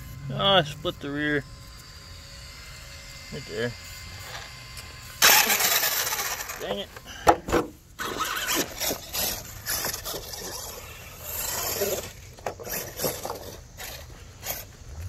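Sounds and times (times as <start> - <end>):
rc truck scrabbling over ground: 4.0 - 15.0.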